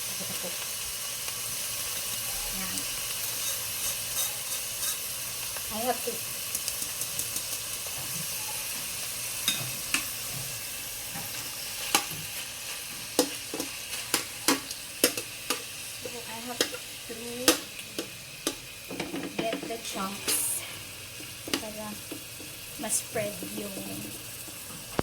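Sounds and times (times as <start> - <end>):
food sizzling in frying pan: 0.0 - 25.0
utensil scraping pan: 3.2 - 5.1.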